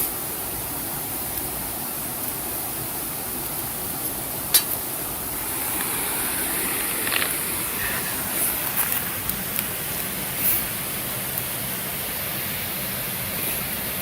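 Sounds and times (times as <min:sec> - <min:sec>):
rushing flowing water: 0:00.0 - 0:14.0
campfire pop: 0:04.0 - 0:11.6.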